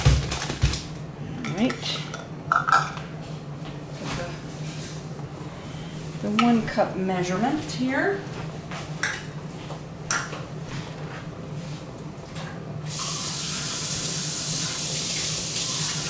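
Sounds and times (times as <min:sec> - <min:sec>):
kitchenware clicks and knocks: 0:01.5 - 0:03.0
tap water running into sink: 0:12.9 - 0:16.0.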